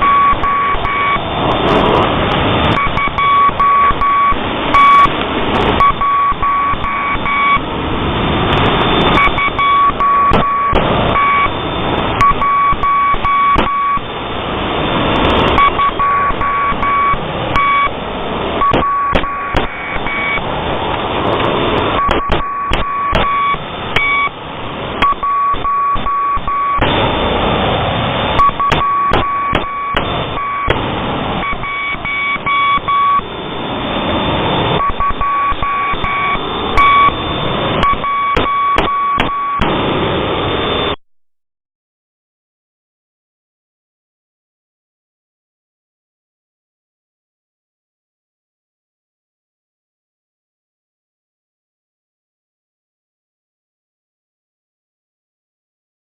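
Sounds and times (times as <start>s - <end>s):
morse code beeps: 0.0s - 7.8s, 8.5s - 14.2s, 15.2s - 18.0s, 18.6s - 20.6s, 21.6s - 24.4s, 25.0s - 27.3s, 28.3s - 39.8s
radio static hissing: 0.0s - 41.0s.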